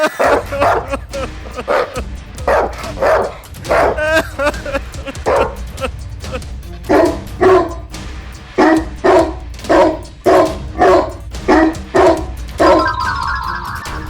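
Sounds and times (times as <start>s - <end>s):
dog barking: 0.0s - 1.0s, 1.6s - 4.2s, 5.2s - 5.6s, 6.9s - 7.9s, 8.6s - 13.0s
background music: 0.0s - 14.0s.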